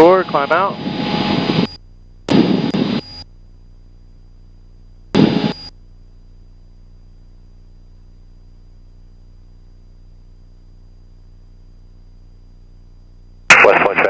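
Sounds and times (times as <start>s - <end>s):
low steady hum: 0.0s - 14.0s
radio squelch noise bursts: 13.5s - 14.0s.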